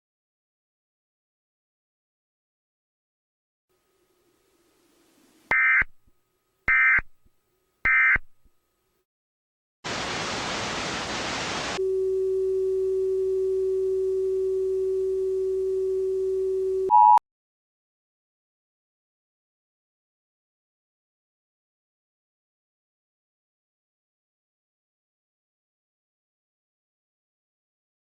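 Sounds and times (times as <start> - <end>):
static hiss: 9.9 - 11.8
steady low tone: 11.8 - 16.9
short high beep: 16.4 - 17.2.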